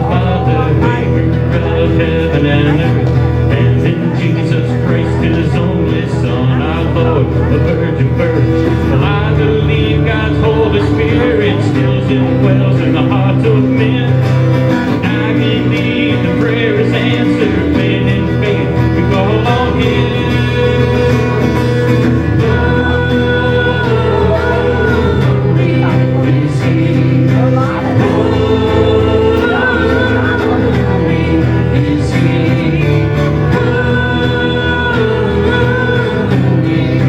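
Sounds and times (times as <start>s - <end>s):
singing: 0.0s - 37.0s
worship band with guitar: 0.0s - 37.0s.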